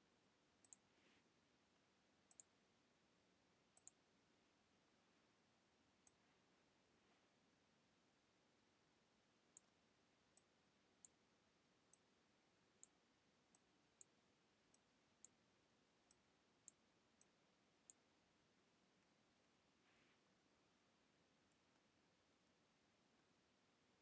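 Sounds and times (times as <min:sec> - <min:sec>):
faint steady hiss: 0:00.0 - 0:24.0
computer mouse clicks: 0:00.6 - 0:00.8, 0:02.3 - 0:02.5, 0:03.8 - 0:04.0.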